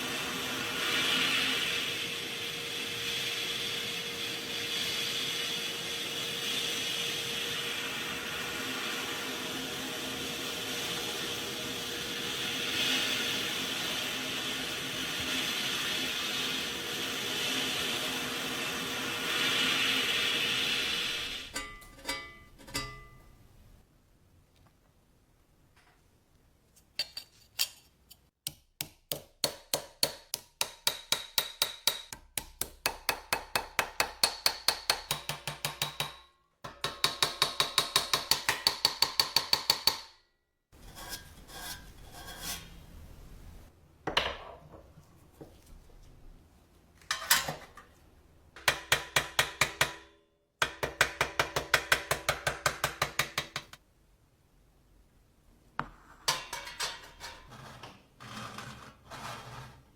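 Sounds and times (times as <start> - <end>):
hammer striking metal: 21.6 - 23.4, 28.5 - 40.2, 48.6 - 53.8.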